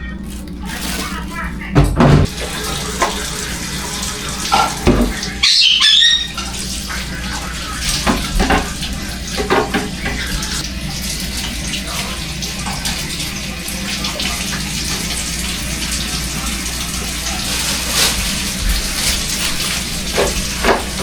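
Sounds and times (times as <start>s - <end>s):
dishes clattering in water: 1.1s - 21.0s
tap running into a sink: 1.8s - 21.0s
brief high squeal: 5.4s - 6.4s.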